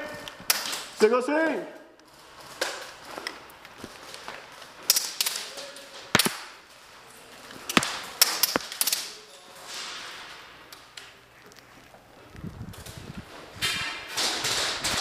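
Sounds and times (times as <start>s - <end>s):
airsoft gun shots: 6.1s - 6.5s.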